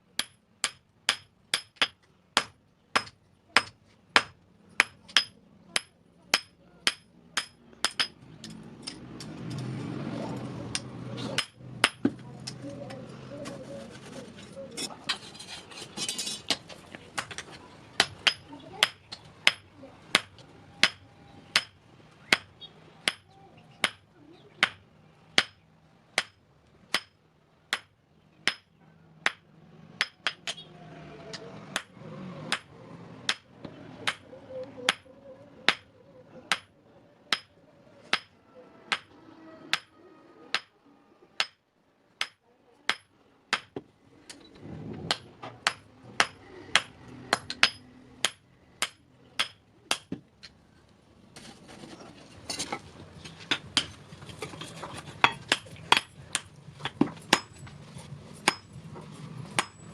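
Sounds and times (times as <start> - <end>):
hammer striking steel on anvil: 0.2 - 9.0, 45.1 - 50.1.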